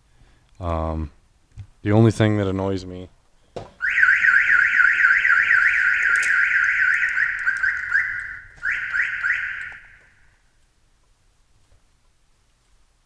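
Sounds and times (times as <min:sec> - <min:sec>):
car alarm siren warbling: 0:03.8 - 0:10.3.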